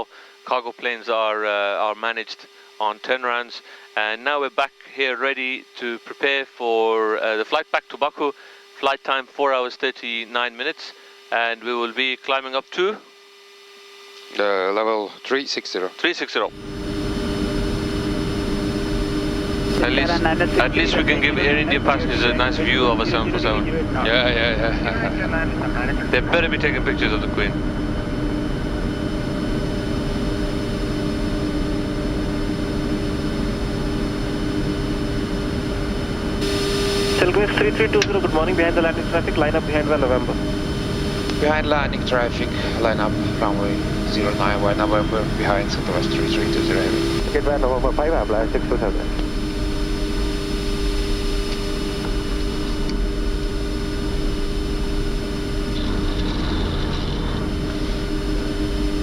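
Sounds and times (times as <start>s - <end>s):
jet engines idling: 16.5s - 59.0s.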